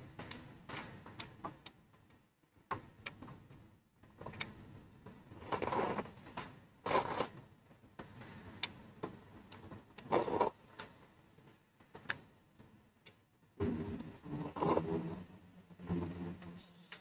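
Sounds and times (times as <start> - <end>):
small clicks and taps: 0.2 - 5.2, 7.3 - 10.1, 10.7 - 13.3.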